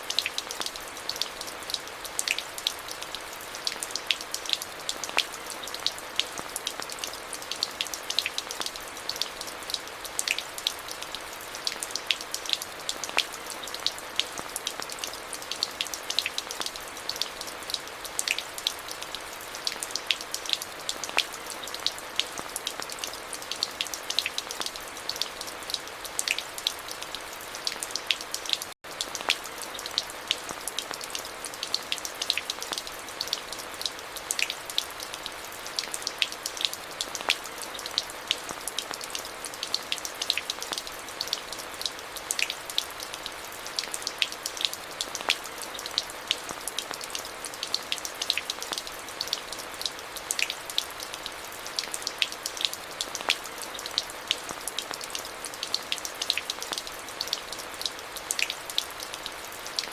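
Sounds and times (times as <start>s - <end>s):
steady rain: 0.0s - 59.9s.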